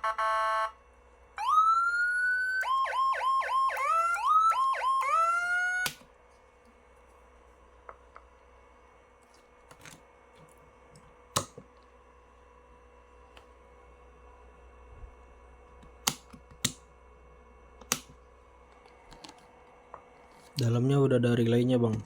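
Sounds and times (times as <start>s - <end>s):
faint electrical hum: 0.0s - 22.0s.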